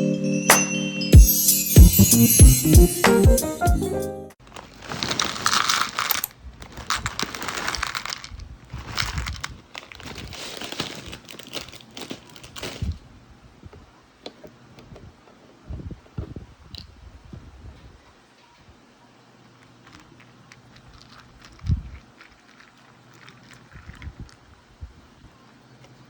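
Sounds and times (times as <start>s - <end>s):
rustling and crinkling handling noise: 4.4s - 13.8s, 19.6s - 26.0s.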